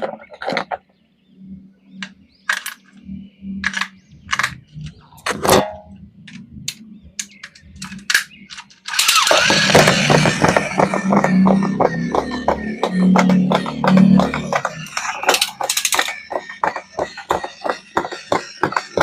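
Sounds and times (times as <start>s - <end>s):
loud music: 9.5s - 19.0s.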